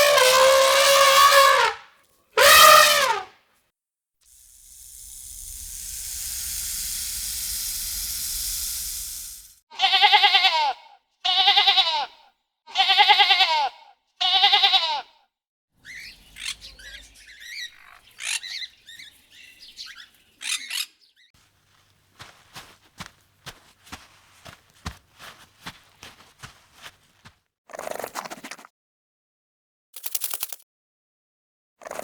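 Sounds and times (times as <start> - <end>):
steady hiss: 4.3 - 9.6
high bird-like chirps: 15.8 - 21.3.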